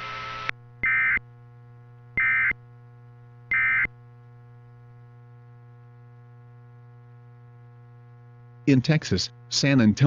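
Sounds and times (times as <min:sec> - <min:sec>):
steady low hum: 0:00.0 - 0:10.0
digital data bursts: 0:00.8 - 0:01.2, 0:02.2 - 0:02.6, 0:03.5 - 0:03.9.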